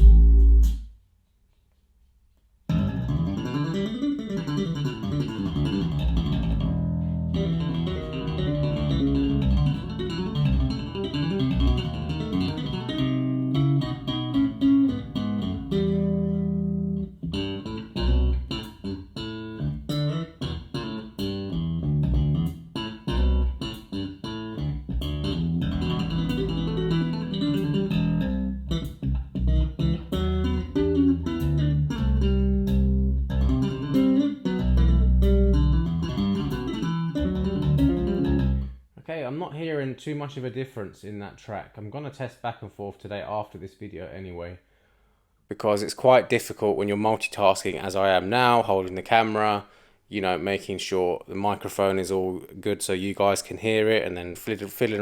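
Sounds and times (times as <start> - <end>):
instrumental music with bass guitar: 0.0 - 0.9, 2.7 - 38.8.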